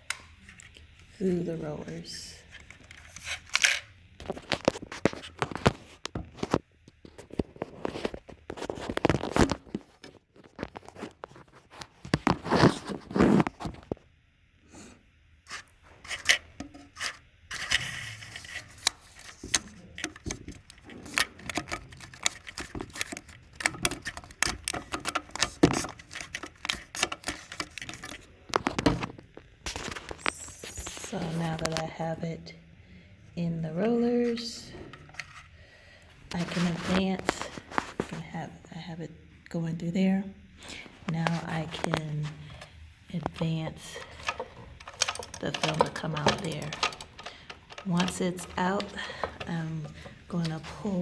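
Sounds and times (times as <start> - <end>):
film scraping and clicking in magazine: 2.5 - 14.0, 15.5 - 31.9, 34.9 - 35.6, 40.8 - 51.0.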